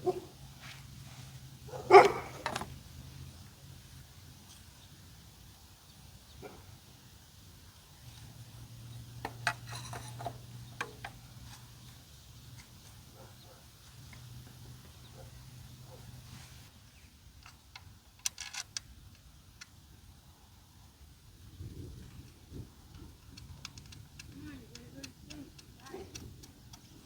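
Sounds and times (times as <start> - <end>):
hand tools clinking on metal: 1.9 - 2.8, 9.2 - 13.2.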